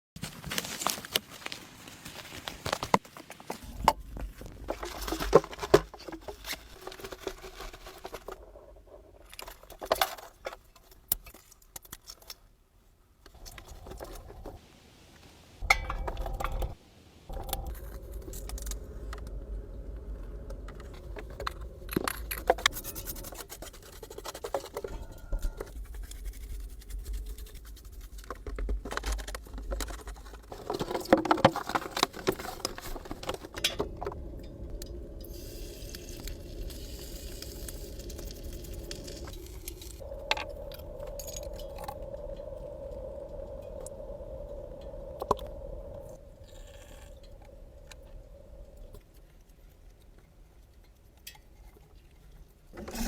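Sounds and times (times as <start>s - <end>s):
objects scraping and clinking: 2.9s - 12.3s, 15.6s - 43.0s
low rumble: 15.6s - 26.8s, 30.4s - 49.2s.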